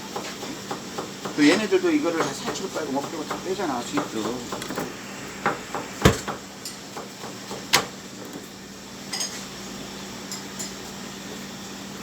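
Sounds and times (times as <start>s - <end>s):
sharp knock on cutting table: 5.4s - 6.4s.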